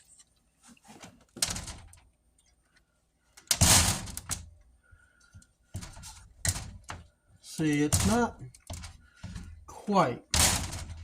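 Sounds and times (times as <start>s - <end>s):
door rattling bang: 3.5s - 4.5s, 10.4s - 11.0s.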